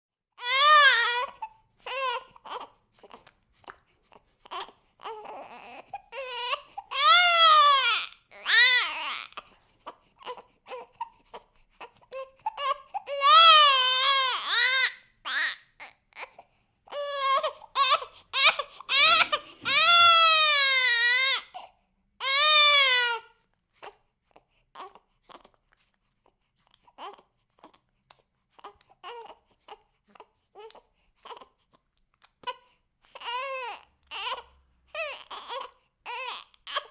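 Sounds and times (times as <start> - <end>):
baby crying: 0.4 - 3.2, 4.4 - 24.0, 32.4 - 36.9.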